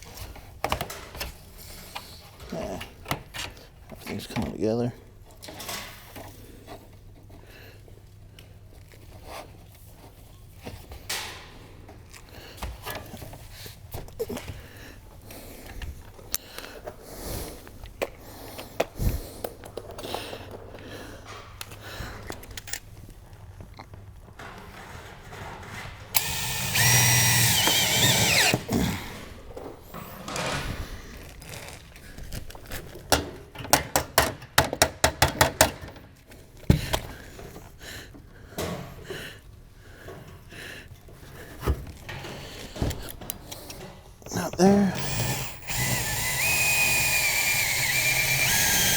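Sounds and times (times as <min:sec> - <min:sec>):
power drill driving a screw: 0:26.2 - 0:29.2, 0:45.0 - 0:48.9
metal roofing trim clicks and taps: 0:33.1 - 0:36.0.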